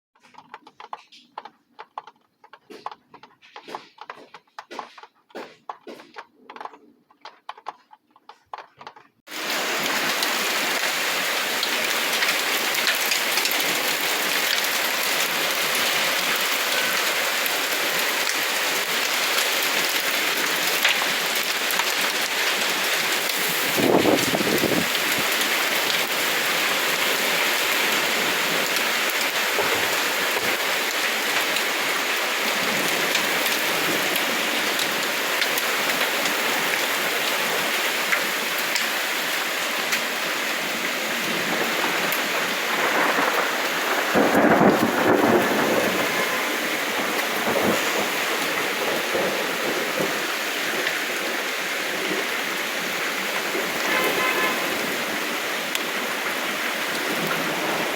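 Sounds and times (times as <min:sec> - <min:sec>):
heavy rain pouring: 0:09.3 - 0:57.9
thunder rumble: 0:41.5 - 0:50.2.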